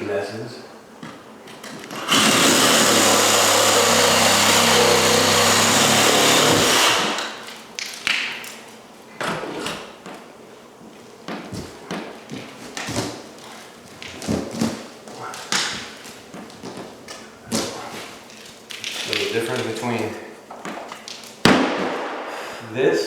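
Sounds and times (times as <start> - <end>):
power tool running: 1.9 - 7.4.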